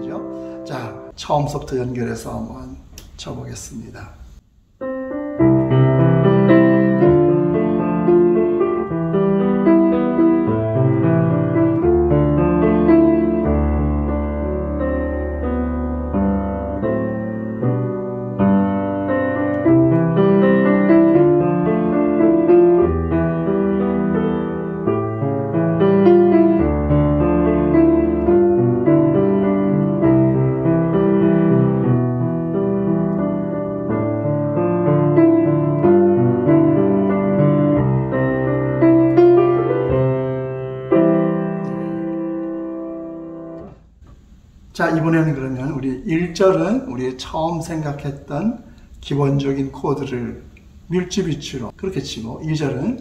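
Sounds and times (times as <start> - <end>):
piano song accompaniment: 0.0 - 1.2, 4.8 - 44.0.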